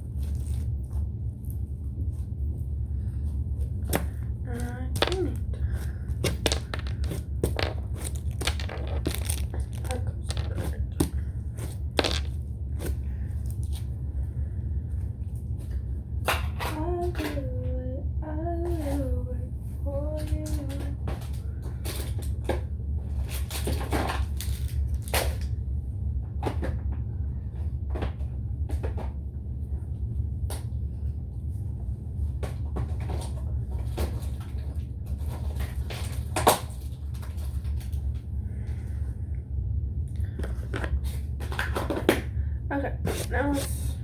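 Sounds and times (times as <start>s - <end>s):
steady low hum: 0.0s - 44.0s
containers clicking and knocking: 6.1s - 11.2s, 12.0s - 12.4s.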